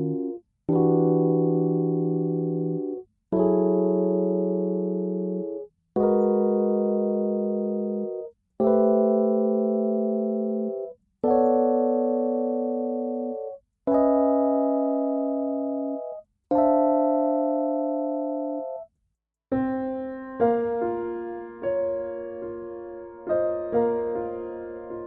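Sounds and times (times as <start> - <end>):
electric piano chords: 0.0 - 18.9, 19.5 - 25.0.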